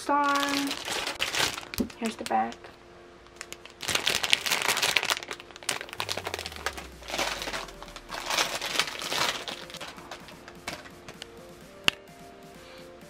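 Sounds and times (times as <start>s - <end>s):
plastic bag crinkling: 0.0s - 2.7s, 3.3s - 10.9s
soft background music: 0.0s - 13.0s.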